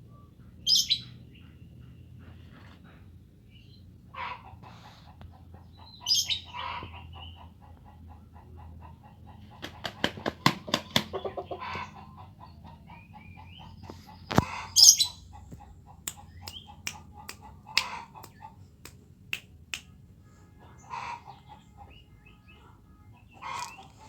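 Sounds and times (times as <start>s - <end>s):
rooster clucking: 4.1s - 19.4s, 20.7s - 22.0s, 23.3s - 24.0s.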